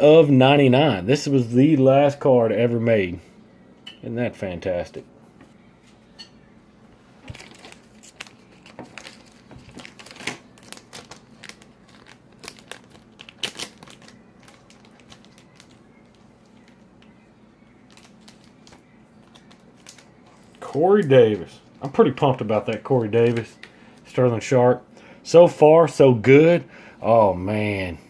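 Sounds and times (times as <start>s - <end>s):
card packaging crinkling: 7.2s - 24.4s.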